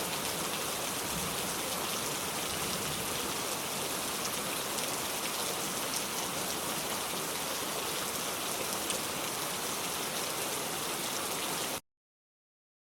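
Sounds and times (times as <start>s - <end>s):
heavy rain falling: 0.0s - 11.8s.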